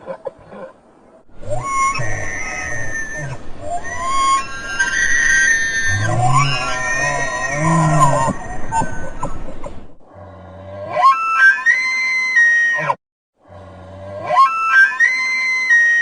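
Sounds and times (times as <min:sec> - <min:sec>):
elk bugling: 0:00.6 - 0:13.0.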